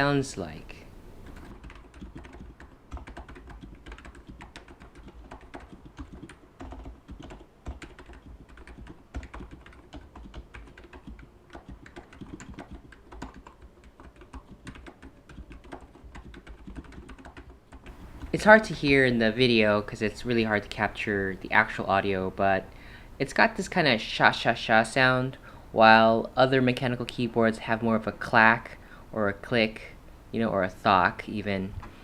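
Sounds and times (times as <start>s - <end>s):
fast keyboard typing: 1.2s - 18.9s.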